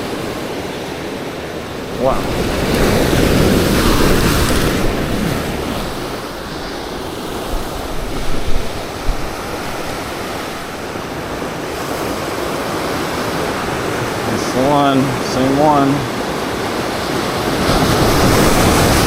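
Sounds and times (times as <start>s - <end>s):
ocean waves on rocky shore: 0.0s - 19.0s
wind buffeting microphone: 1.6s - 14.2s.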